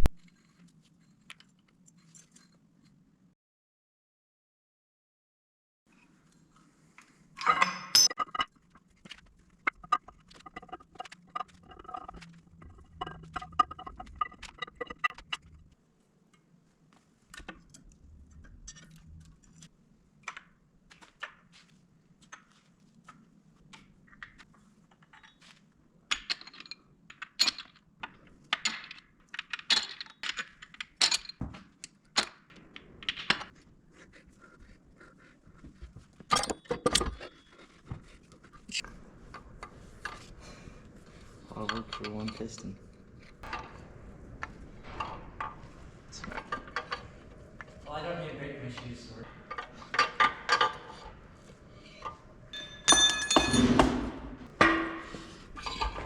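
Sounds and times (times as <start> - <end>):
metal tools clinking on engine parts: 7.4 - 8.7, 36.3 - 37.8, 52.0 - 53.9.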